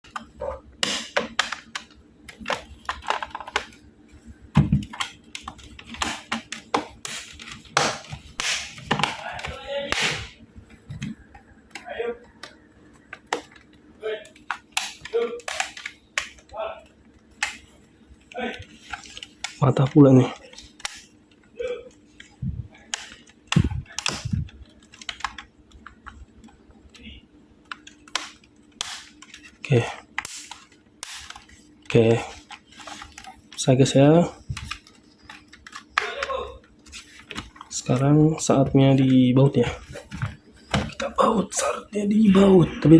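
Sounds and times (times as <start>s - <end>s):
plastic laptop parts clicking: 22.9s - 26.6s, 34.5s - 36.3s.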